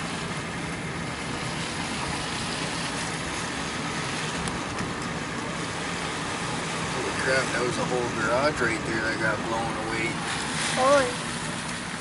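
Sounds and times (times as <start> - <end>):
car engine and tyre noise: 0.0 - 12.0.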